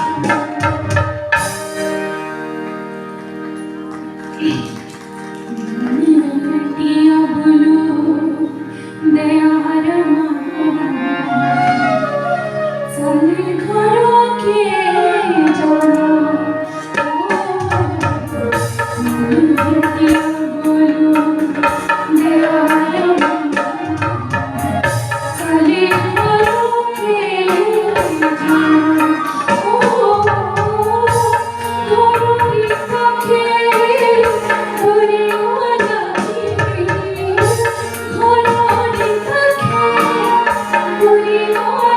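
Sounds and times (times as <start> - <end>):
hand drums: 0.0 - 2.1, 16.8 - 41.9
folk melody with singing: 0.0 - 41.9.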